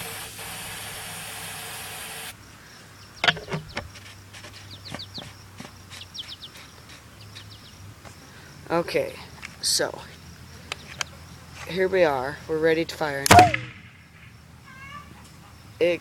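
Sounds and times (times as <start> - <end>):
aerosol can spraying hiss: 0.0 - 2.4
birds chirping faintly: 2.4 - 16.0.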